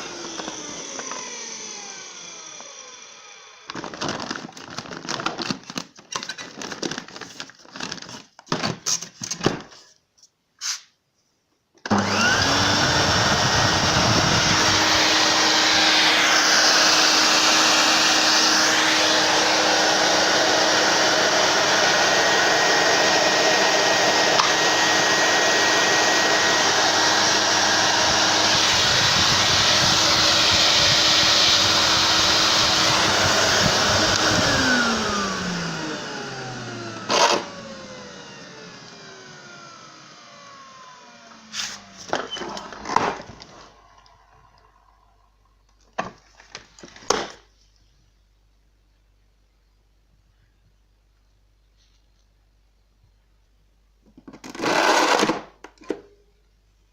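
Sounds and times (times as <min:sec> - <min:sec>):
motor winding down: 0:00.0 - 0:03.7, 0:11.9 - 0:21.9, 0:23.0 - 0:41.4
vacuum cleaner running: 0:00.0 - 0:05.5, 0:11.8 - 0:45.4, 0:54.5 - 0:55.4.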